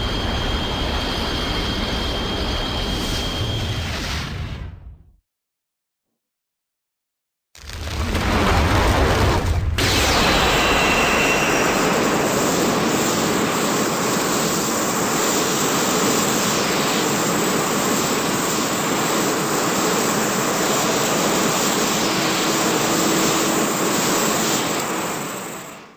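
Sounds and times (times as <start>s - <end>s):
faint high whine: 0.0s - 4.6s, 9.8s - 25.9s
loud steady rushing roar: 10.0s - 25.6s.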